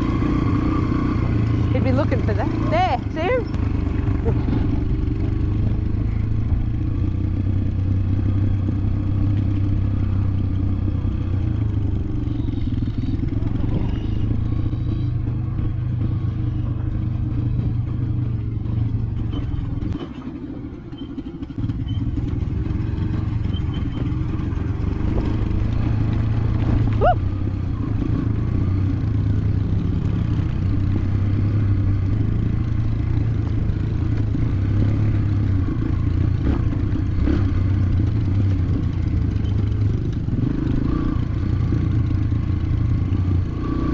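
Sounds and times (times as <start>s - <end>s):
motorbike engine running: 0.0s - 43.9s
short high squeak: 19.2s - 20.3s, 20.9s - 22.2s, 23.4s - 24.2s.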